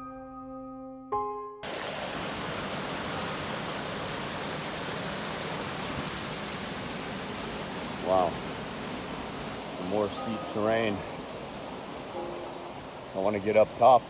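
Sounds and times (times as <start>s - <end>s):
soft keyboard music: 0.0s - 1.6s, 9.8s - 11.3s, 12.0s - 14.0s
waterfall rushing: 1.6s - 14.0s.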